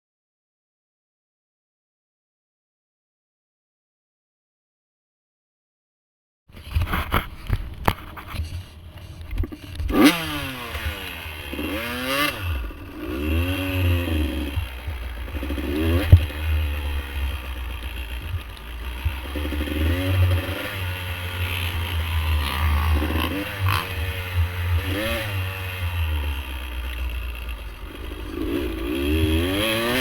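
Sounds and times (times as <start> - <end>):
bike knocking and scraping: 6.5 - 30.0
dirt bike engine revving: 6.7 - 30.0.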